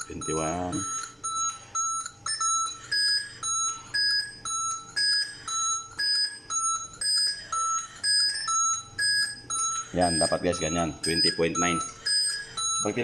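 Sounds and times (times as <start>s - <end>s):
alternating electronic alarm beeps: 0.0s - 13.0s
person speaking: 9.9s - 12.0s.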